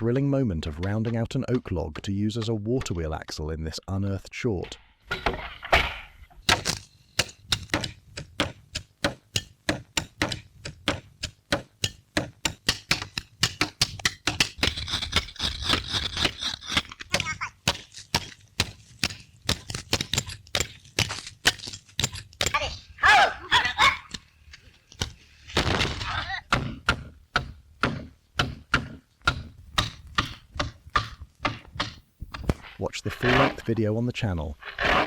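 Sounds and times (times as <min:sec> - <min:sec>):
tools chopping wood: 0:06.4 - 0:32.6.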